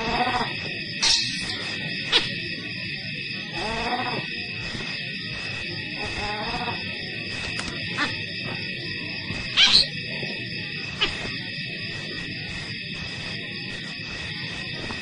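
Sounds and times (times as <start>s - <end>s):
baby baboon squealing: 9.6s - 9.9s.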